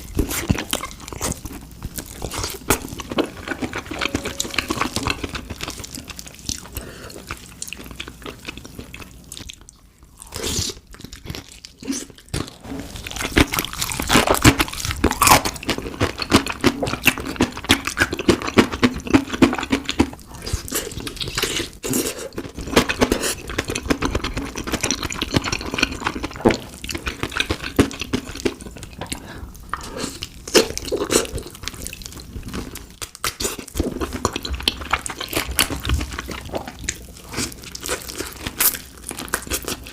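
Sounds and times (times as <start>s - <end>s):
crunching fried chicken: 13.1s - 39.9s.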